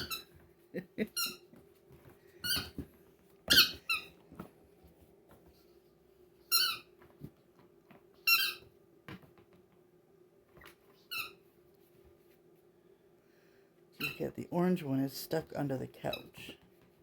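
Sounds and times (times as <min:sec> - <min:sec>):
squeaky toy squeaks: 0:00.0 - 0:00.3, 0:02.4 - 0:02.8, 0:03.5 - 0:04.1, 0:06.5 - 0:06.9, 0:08.2 - 0:08.7, 0:11.0 - 0:11.4, 0:14.0 - 0:14.2.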